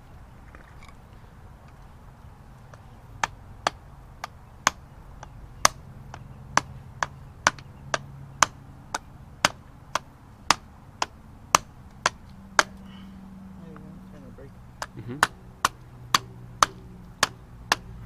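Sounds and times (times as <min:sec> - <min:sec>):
hammering on metal: 0:03.2 - 0:13.0, 0:14.8 - 0:18.0.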